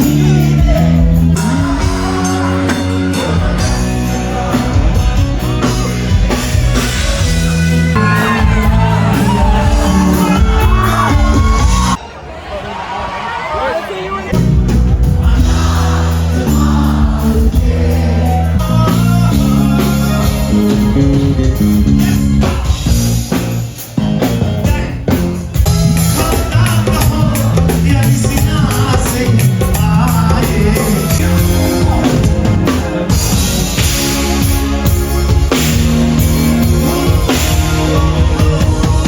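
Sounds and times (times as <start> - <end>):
person singing: 0.0 - 6.4, 7.9 - 12.0, 15.1 - 23.3, 24.6 - 34.0, 36.2 - 39.0
bass guitar: 0.0 - 12.0, 14.3 - 39.0
drum kit: 0.0 - 12.0, 14.3 - 39.0.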